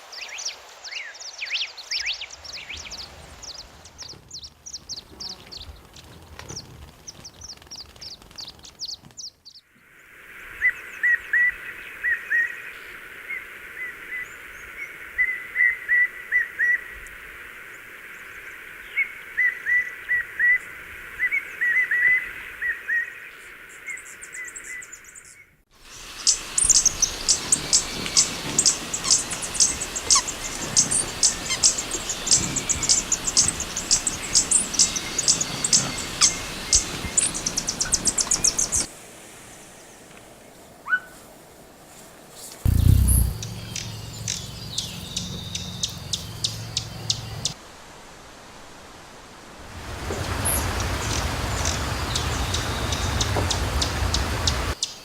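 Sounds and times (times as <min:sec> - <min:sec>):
high thin bird notes: 0:42.7 - 0:46.2
rapid high sharp bird chirps: 0:42.7 - 0:47.6.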